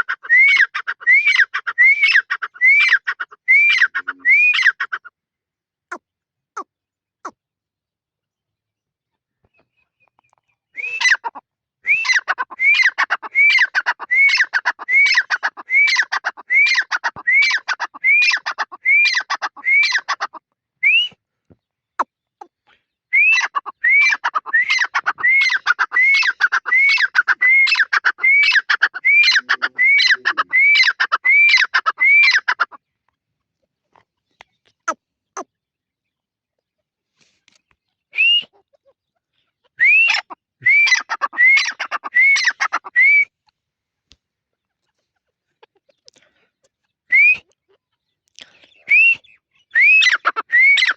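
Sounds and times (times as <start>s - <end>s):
francolin calling: 23.2s - 32.7s.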